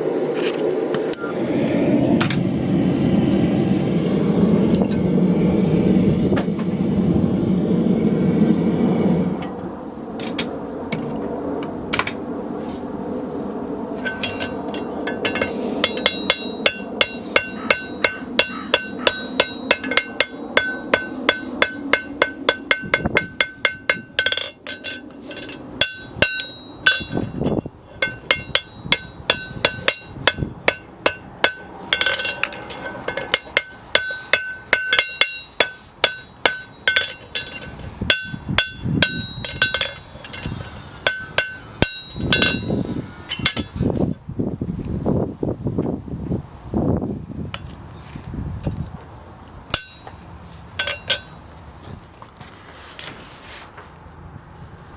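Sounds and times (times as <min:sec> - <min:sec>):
hammer striking metal: 0:14.0 - 0:43.9, 0:49.7 - 0:51.4.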